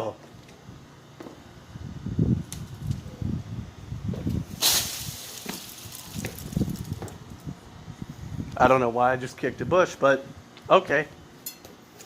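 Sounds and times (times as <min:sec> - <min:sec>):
low rumble on microphone: 0:01.7 - 0:10.5
short sharp hiss: 0:04.6 - 0:06.0.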